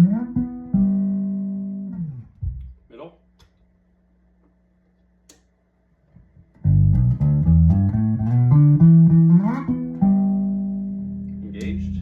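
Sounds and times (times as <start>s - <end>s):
electric bass plucked notes: 0.0s - 2.8s, 6.5s - 12.0s.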